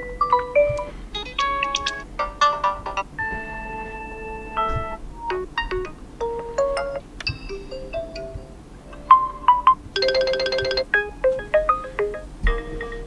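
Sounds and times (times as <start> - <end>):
phone alarm tones: 10.0 - 11.0.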